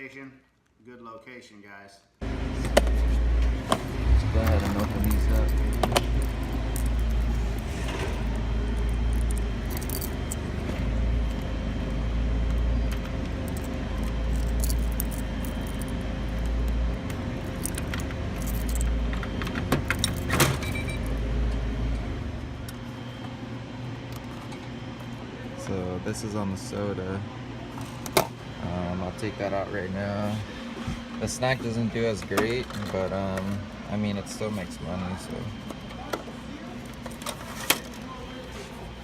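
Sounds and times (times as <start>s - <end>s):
keys jangling: 4.6s - 7.7s, 8.3s - 10.5s, 13.0s - 16.6s, 17.4s - 19.0s, 19.9s - 21.1s.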